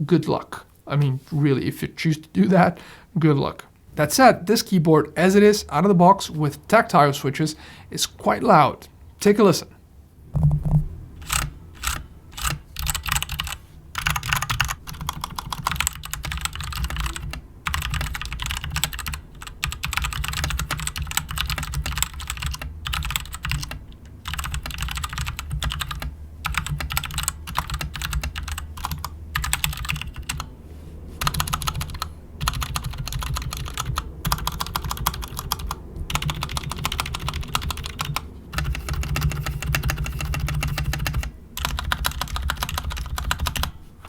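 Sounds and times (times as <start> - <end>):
mechanical keyboard typing: 11.2 - 30.5, 31.2 - 43.7.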